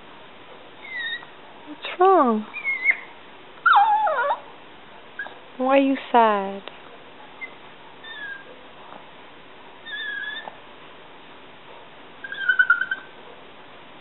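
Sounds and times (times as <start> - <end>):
dog whimpering: 0.8 - 1.3, 2.5 - 4.5, 7.4 - 8.5, 9.8 - 10.6, 12.2 - 13.1.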